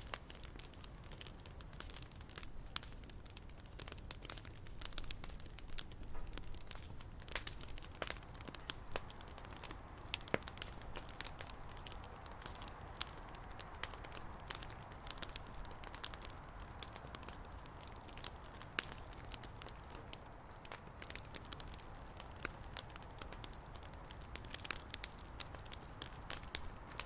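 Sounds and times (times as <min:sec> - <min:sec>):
low rush of flame: 0:00.0 - 0:27.0
wood fire crackling and popping: 0:00.0 - 0:27.0.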